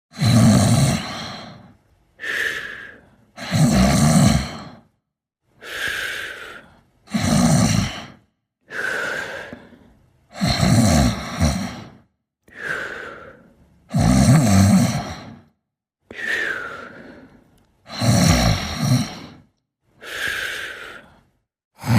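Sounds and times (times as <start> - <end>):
loud rattling snores: 0.1 - 1.6, 3.4 - 4.9, 7.1 - 8.2, 10.3 - 12.1, 13.9 - 15.6, 17.9 - 19.5.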